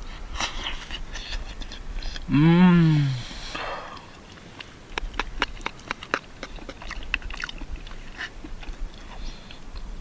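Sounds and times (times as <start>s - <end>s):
person chewing crisp food: 3.9s - 10.0s.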